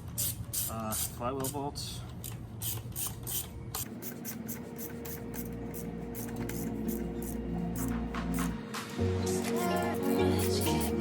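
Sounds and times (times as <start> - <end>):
ratchet wrench clicking: 0.0 - 8.5.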